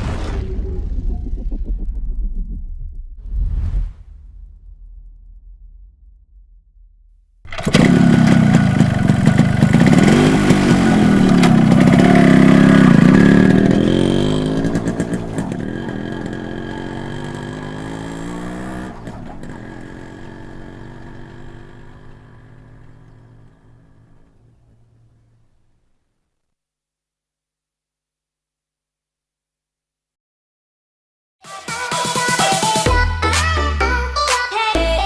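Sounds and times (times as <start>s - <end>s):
scooter engine revving: 7.5s - 24.6s.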